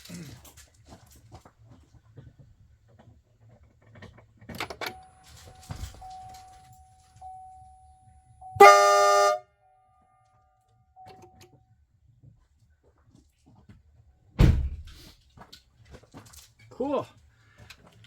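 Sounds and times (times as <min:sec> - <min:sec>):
faint steady tone: 0:04.8 - 0:11.8
air horn blast: 0:08.5 - 0:09.5.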